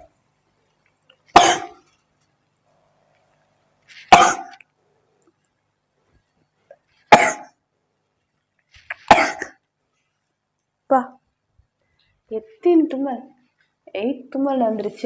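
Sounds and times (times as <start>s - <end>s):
woman sneezing: 4.1s - 4.6s.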